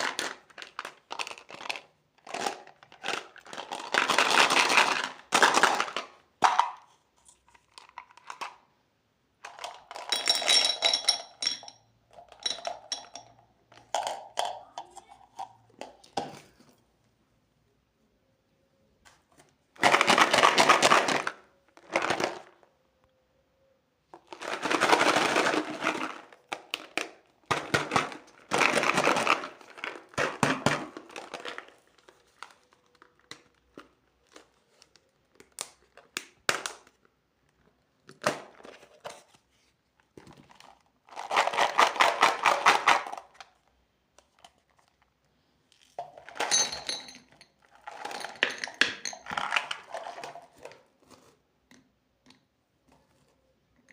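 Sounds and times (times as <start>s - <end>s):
plastic wrappers crinkling and tearing: 0.0s - 6.2s.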